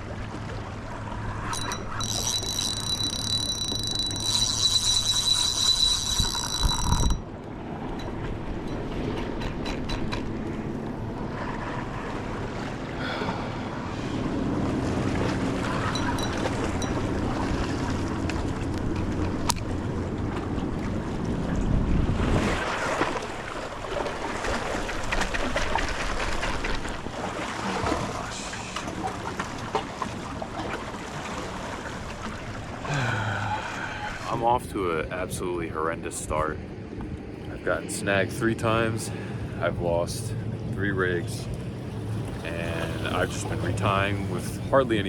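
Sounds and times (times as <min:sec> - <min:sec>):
low steady hum: 0:00.0 - 0:22.3, 0:23.2 - 0:45.0
wind buffeting microphone: 0:05.9 - 0:11.4, 0:14.3 - 0:23.4.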